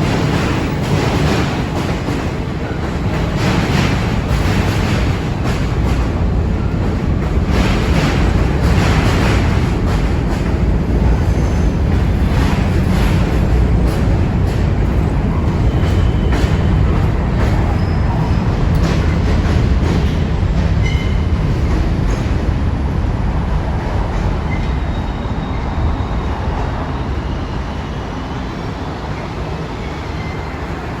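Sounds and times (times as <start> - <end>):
heavy train rumble: 0.0 - 31.0
train wheels squealing: 11.1 - 13.4, 14.9 - 19.3, 20.8 - 21.6, 24.1 - 31.0.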